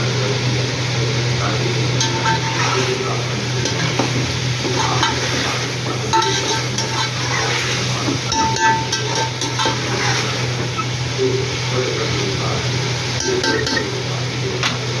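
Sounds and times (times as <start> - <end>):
food sizzling in a pot: 0.0 - 15.0
spoon scraping a pot: 2.0 - 11.0.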